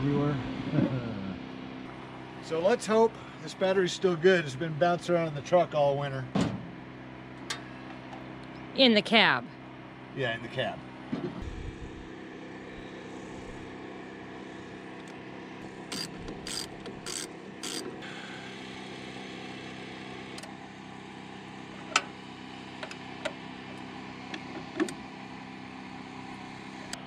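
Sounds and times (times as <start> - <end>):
steady low hum: 0.0 - 27.0
ratchet wrench clicking: 15.9 - 17.9
sharp metallic clicks: 15.9 - 17.9.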